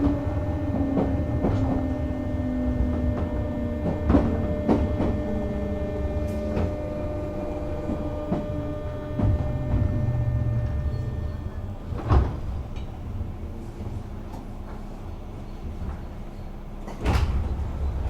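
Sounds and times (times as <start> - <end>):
electric train motor whine: 0.0 - 12.9
low loud rumble: 0.0 - 16.1.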